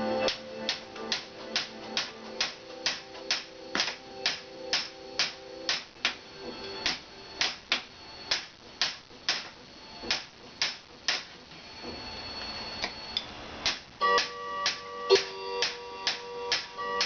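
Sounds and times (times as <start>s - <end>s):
sustained instrument notes: 0.0s - 7.4s
percussive clicking beat: 0.2s - 6.2s, 13.7s - 16.8s.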